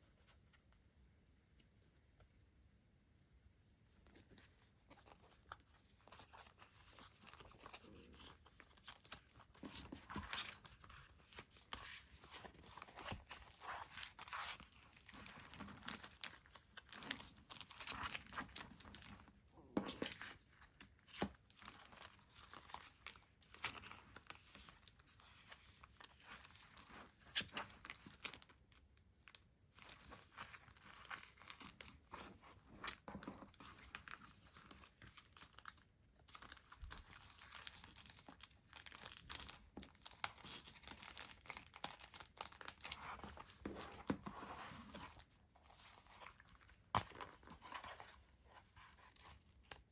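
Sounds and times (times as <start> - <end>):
packaging crinkling and tearing: 33.2 - 44.1.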